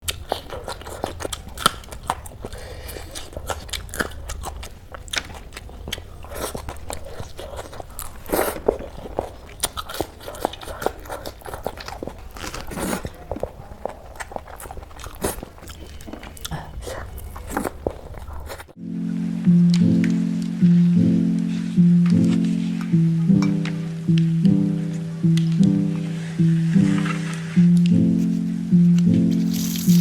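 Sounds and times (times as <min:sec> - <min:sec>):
crunching and chewing: 0:00.0 - 0:18.8, 0:28.2 - 0:30.0
low steady hum: 0:18.8 - 0:30.0.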